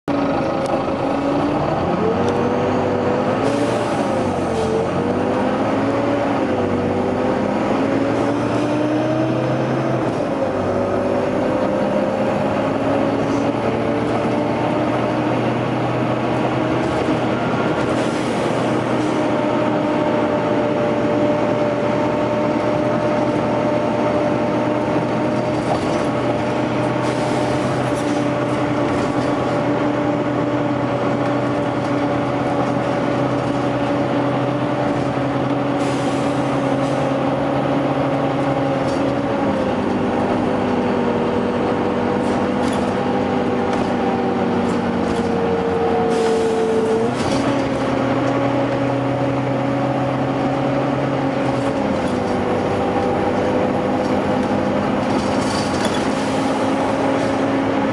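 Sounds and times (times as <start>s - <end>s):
bus engine and cooling fan whine: 0.1s - 57.9s.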